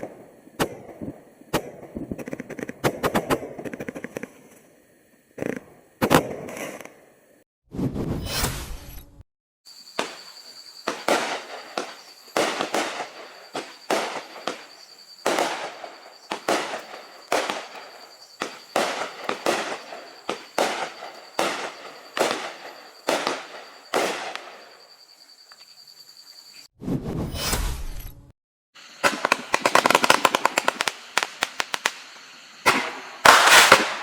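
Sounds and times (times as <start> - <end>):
fireworks bangs with crackling: 9.9 - 24.8, 29.0 - 34.0.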